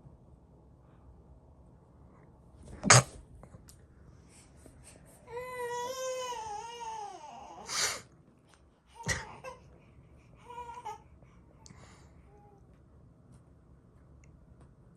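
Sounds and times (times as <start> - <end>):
person sneezing: 2.7 - 3.2, 7.7 - 8.1.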